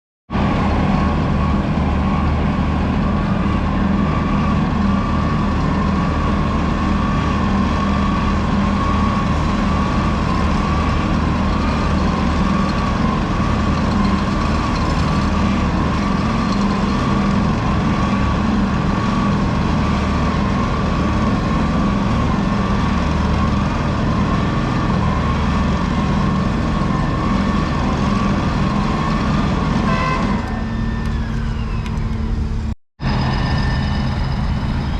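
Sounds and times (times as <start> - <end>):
diesel construction machinery running: 0.3 - 34.9
wavering high whine: 29.9 - 34.9.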